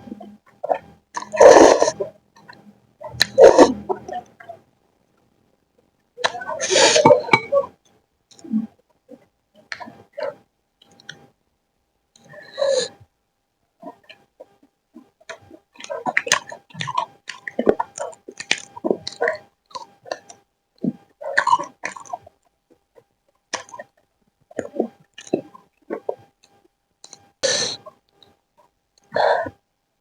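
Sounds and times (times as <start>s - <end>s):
person chewing and eating: 0.6s - 2.6s.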